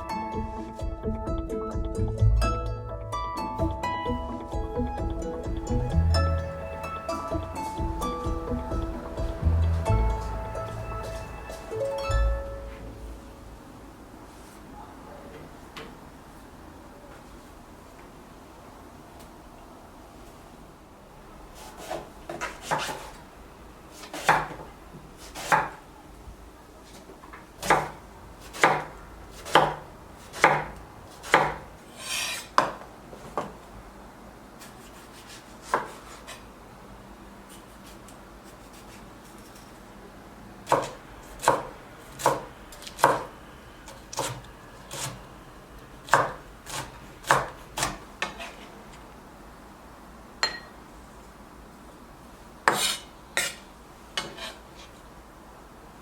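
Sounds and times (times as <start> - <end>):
knife chopping on cutting board: 21.7 - 23.1, 24.0 - 24.6, 25.2 - 25.8, 27.6 - 32.8, 34.6 - 36.4, 40.7 - 43.3, 46.0 - 48.6, 52.7 - 53.6.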